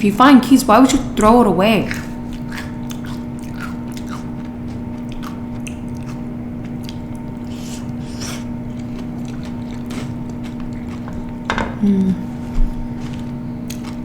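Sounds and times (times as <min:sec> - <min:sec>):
steady hum: 0:00.0 - 0:14.0
mouth clicks and crunches: 0:01.9 - 0:11.2
person chewing food: 0:01.9 - 0:11.5, 0:12.1 - 0:14.0.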